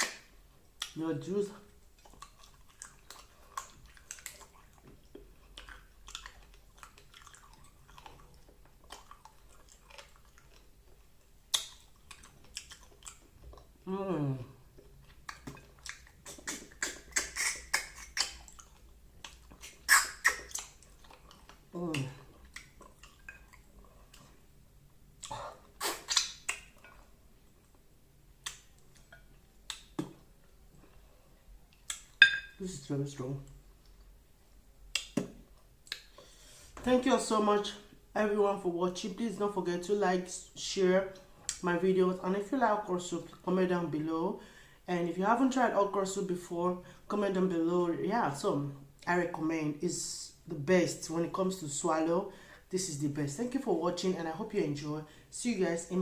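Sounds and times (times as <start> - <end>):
chewing and crunching bones: 1.7 - 13.8, 14.7 - 24.4
bones cracking and clicking: 11.5 - 13.7, 25.2 - 27.0
sucking on bones: 14.7 - 24.4.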